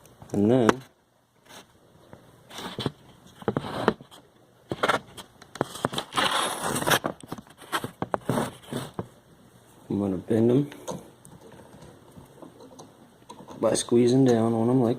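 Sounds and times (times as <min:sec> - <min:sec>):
stiff wires rustling and scraping: 0:01.4 - 0:09.2.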